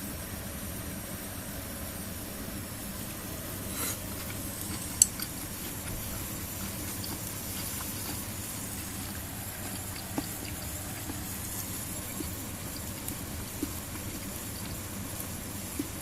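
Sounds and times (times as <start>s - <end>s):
steady hiss: 0.0s - 16.0s.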